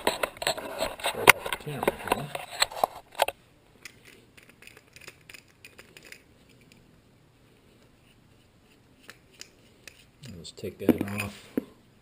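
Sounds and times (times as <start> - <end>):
metal tools clicking and scraping: 0.0 - 6.8.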